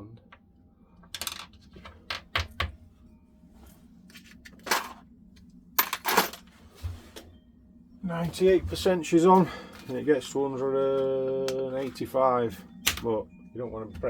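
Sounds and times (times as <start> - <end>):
hard objects clicking and knocking: 1.1 - 2.8.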